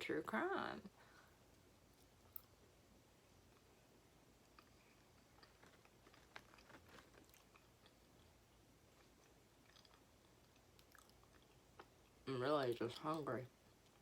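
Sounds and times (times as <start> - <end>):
person chewing food: 3.4 - 12.2, 12.8 - 14.0.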